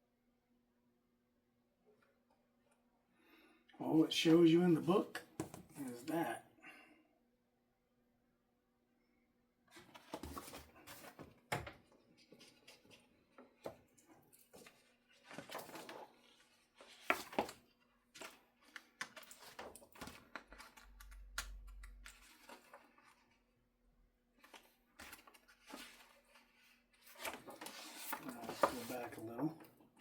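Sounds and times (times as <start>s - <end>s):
paper rustling: 14.5s - 23.5s, 24.4s - 29.5s.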